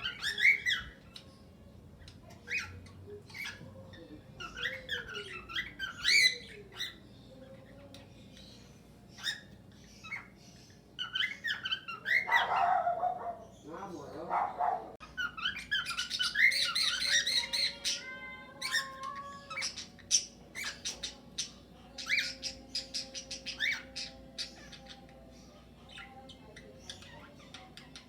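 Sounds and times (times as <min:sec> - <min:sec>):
parrots squawking and chirping: 0:00.0 - 0:28.0.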